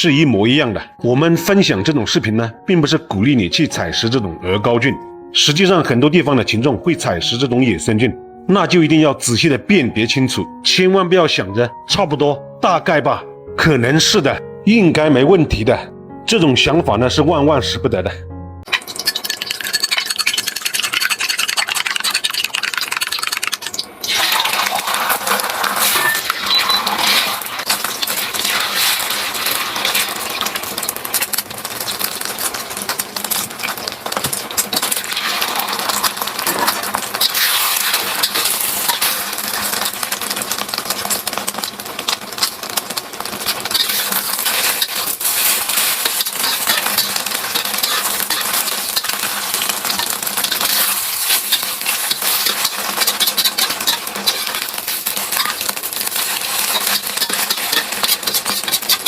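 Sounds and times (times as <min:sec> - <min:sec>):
metal utensil scraping cookware: 0:18.7 - 0:31.4, 0:34.3 - 0:40.1, 0:43.4 - 0:59.0
sizzling hiss: 0:23.7 - 0:59.0.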